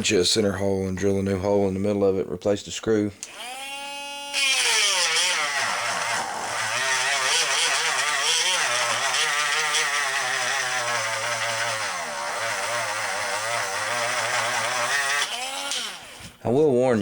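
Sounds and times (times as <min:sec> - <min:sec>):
rotary tool grinding wood: 0:03.2 - 0:16.4.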